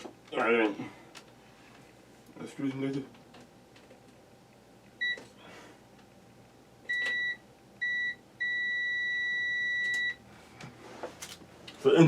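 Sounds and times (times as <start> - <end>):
continuity tester beeping: 6.9 - 10.2.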